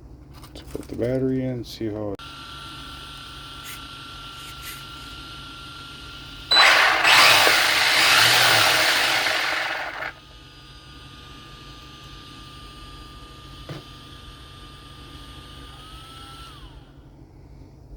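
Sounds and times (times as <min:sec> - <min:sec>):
electric motor whirring: 0:06.5 - 0:10.2.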